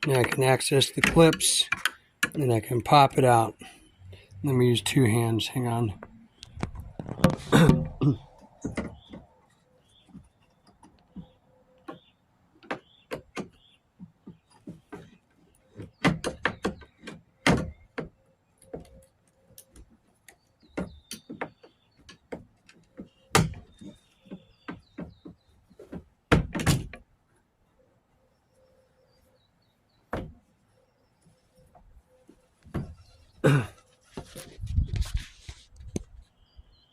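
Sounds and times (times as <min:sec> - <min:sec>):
plastic clicks taps and knocks: 0:00.0 - 0:02.4, 0:10.1 - 0:27.0.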